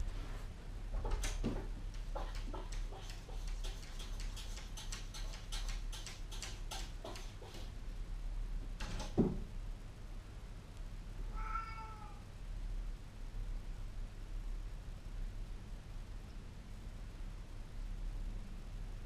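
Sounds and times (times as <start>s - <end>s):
light clicking or scratching: 1.1s - 7.8s
cat meowing: 11.3s - 12.2s.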